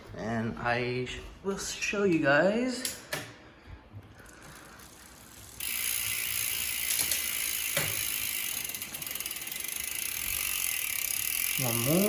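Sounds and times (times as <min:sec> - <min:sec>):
bicycle freehub ratcheting: 0:04.2 - 0:12.0.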